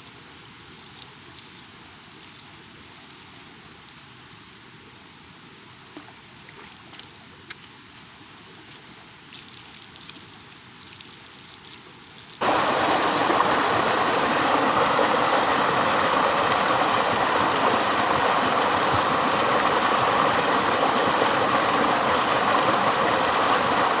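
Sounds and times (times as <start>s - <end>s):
flowing water rushing: 12.4s - 24.0s.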